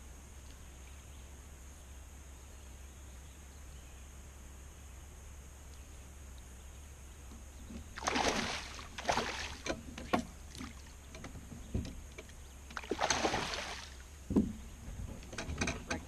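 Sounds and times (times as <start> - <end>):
low steady hum: 0.0 - 16.0
water splashing: 7.9 - 11.0, 12.7 - 14.2.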